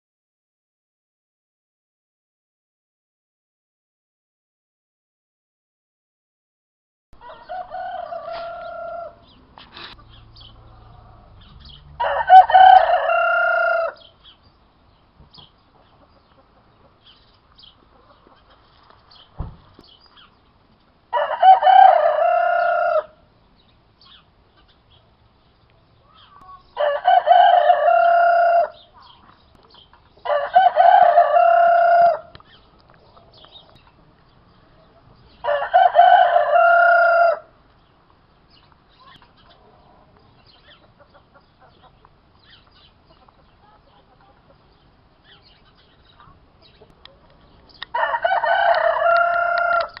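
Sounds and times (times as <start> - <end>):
cockerel crowing: 7.2 - 9.3, 10.0 - 14.1, 21.1 - 23.2, 26.2 - 28.9, 30.2 - 32.4, 35.4 - 37.5, 47.8 - 50.0.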